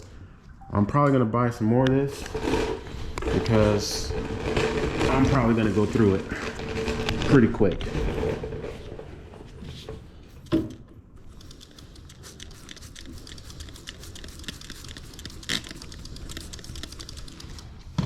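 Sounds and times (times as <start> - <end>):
scratchy scrubbing on tyre: 2.3 - 8.9.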